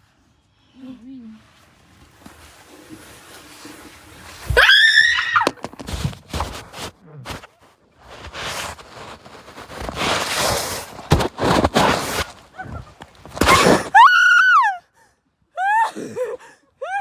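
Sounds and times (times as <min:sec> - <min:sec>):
rough rustling noise: 0:01.4 - 0:14.0.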